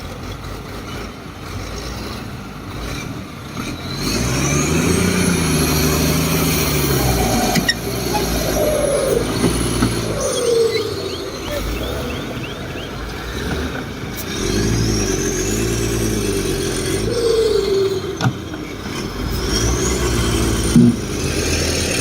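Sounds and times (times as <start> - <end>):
diesel engine revving: 0.0 - 22.0
rising and falling whine: 5.2 - 13.8, 14.8 - 19.2.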